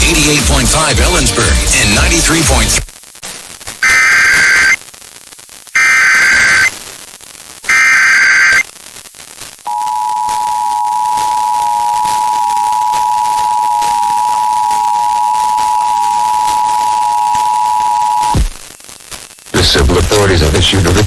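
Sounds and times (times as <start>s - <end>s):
radio reception hiss: 0.0s - 21.0s
two-tone alert signal: 9.7s - 18.3s.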